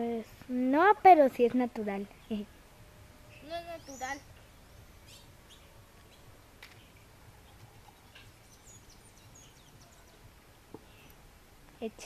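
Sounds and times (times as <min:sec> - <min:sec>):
high bird chirps: 0:03.2 - 0:10.2.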